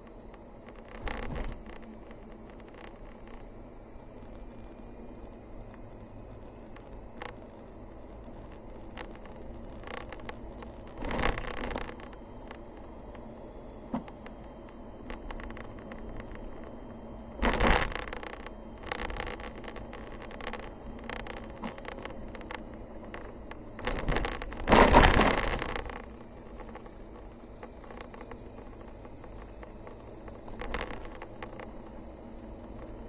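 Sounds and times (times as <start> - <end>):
light ticks and crackles: 0.0 - 33.0
vehicle running noise: 0.0 - 33.0.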